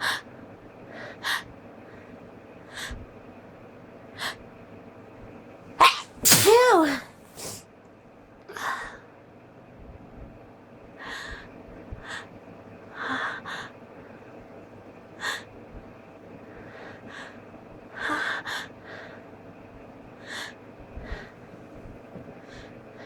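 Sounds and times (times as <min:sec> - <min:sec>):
person gasping breaths: 0:05.8 - 0:07.6.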